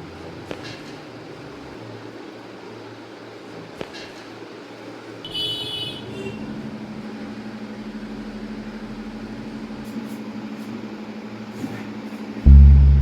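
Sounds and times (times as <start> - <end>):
loud music: 12.5 - 13.0
pulsing machine hum: 12.5 - 13.0.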